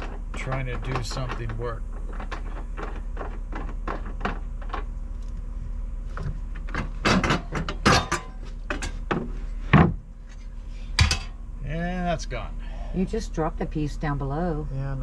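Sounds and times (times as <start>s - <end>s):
steady low hum: 0.0s - 15.0s
metallic knocks: 6.7s - 10.0s, 11.0s - 11.4s.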